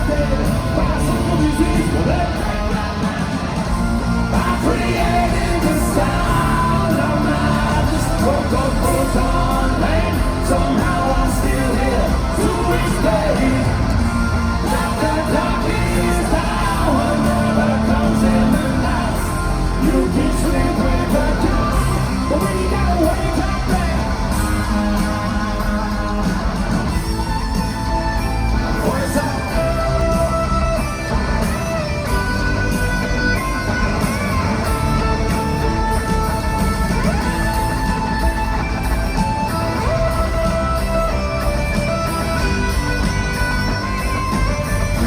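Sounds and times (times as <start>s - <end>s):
person singing and yelling: 0.0s - 26.0s
live hard rock band: 0.0s - 45.0s.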